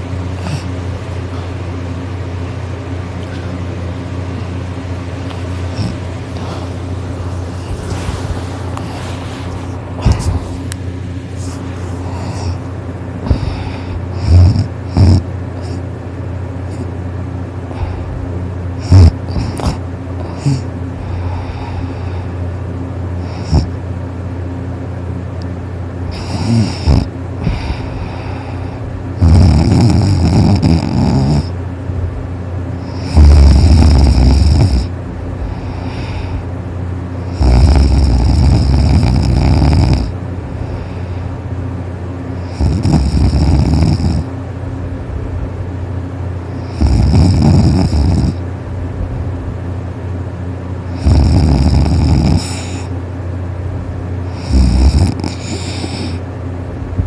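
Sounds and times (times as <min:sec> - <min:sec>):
steady low hum: 0:00.0 - 0:57.0
person snoring: 0:00.4 - 0:00.8, 0:05.5 - 0:10.8, 0:11.4 - 0:15.8, 0:18.8 - 0:22.3, 0:23.2 - 0:23.8, 0:26.1 - 0:31.6, 0:32.8 - 0:36.4, 0:37.2 - 0:41.3, 0:42.4 - 0:44.3, 0:46.6 - 0:48.4, 0:50.9 - 0:52.9, 0:54.3 - 0:56.2.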